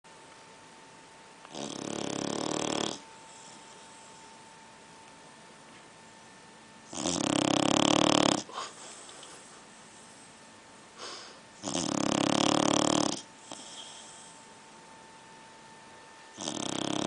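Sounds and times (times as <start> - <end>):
dog snoring: 1.5 - 4.3, 6.8 - 9.1, 11.0 - 14.5, 16.3 - 17.0
soft breaths: 3.1 - 4.5.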